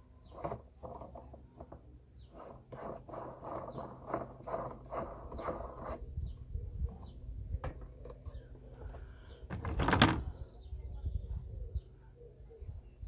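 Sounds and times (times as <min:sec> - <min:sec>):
wind rumble on microphone: 0:05.3 - 0:12.0
plastic parts being handled: 0:07.6 - 0:10.4.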